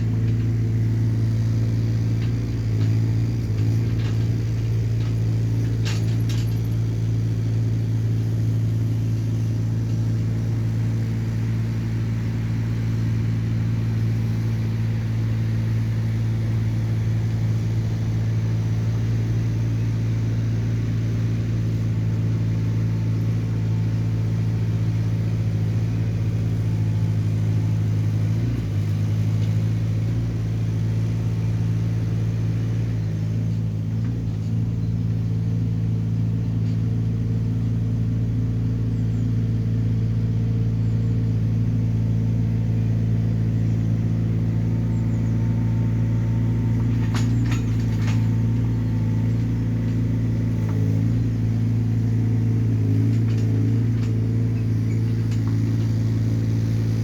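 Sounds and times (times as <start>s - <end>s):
diesel engine running: 0.0s - 57.0s
metal clank: 1.4s - 7.0s, 46.2s - 51.4s.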